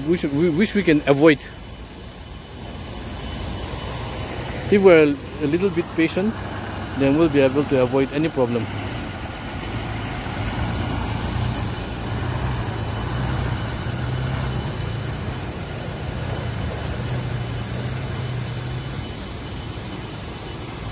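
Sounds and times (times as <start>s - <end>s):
road traffic noise: 0.0s - 20.9s
vehicle engines running: 0.0s - 20.9s.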